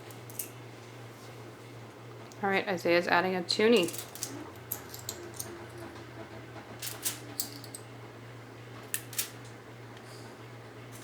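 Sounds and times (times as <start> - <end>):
steady low hum: 0.0 - 11.0
coins clicking on foil: 6.8 - 7.8.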